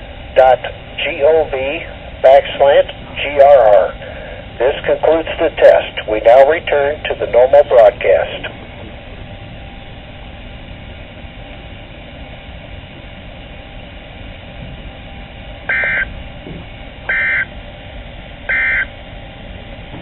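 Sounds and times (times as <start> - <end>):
radio static hiss: 0.4 - 9.2, 15.7 - 16.1, 18.5 - 18.9.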